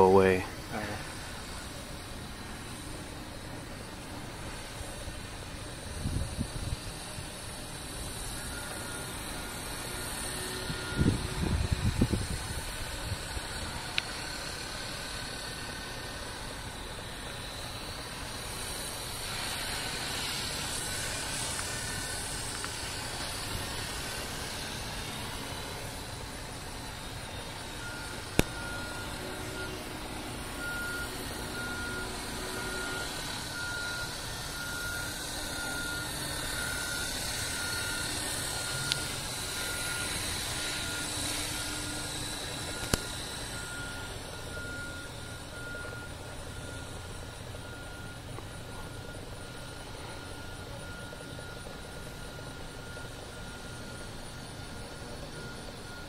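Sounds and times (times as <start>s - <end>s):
rc helicopter rotor and motor: 0.0s - 56.0s
high beep: 27.4s - 30.0s, 30.6s - 56.0s.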